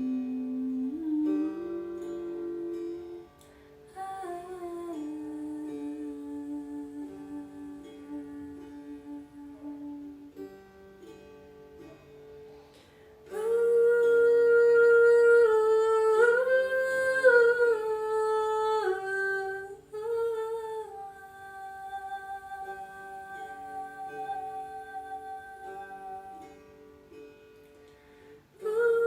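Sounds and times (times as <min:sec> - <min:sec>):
person humming long notes: 0:00.0 - 0:03.3, 0:03.9 - 0:10.5, 0:13.3 - 0:26.6
plucked string notes: 0:00.0 - 0:29.0
soft sustained tones: 0:00.0 - 0:29.0.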